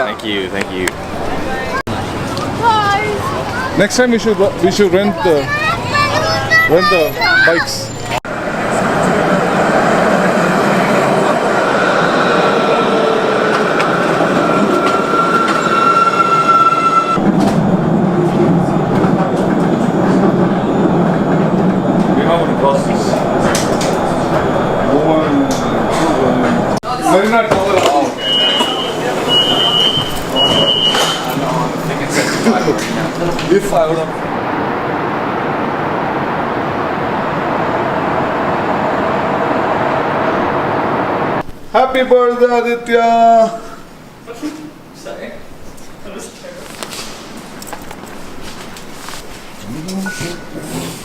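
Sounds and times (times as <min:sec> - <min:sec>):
train running: 0:00.2 - 0:41.7, 0:45.4 - 0:51.0
steady high whine: 0:28.2 - 0:41.7.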